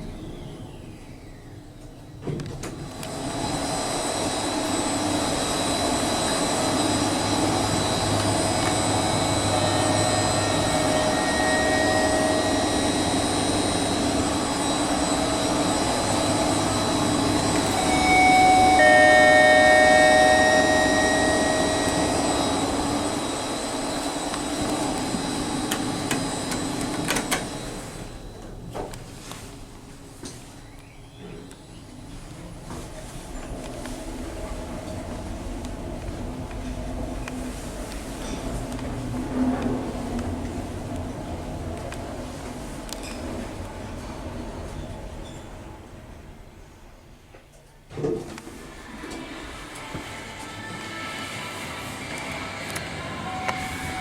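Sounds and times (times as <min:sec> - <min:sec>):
lift car rushing in shaft: 0:02.6 - 0:28.4, 0:47.9 - 0:54.0.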